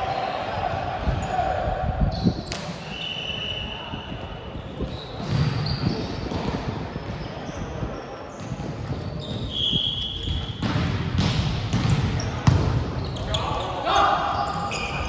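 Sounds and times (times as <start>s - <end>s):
shoe squeaks: 2.1s - 10.7s, 11.8s - 15.0s.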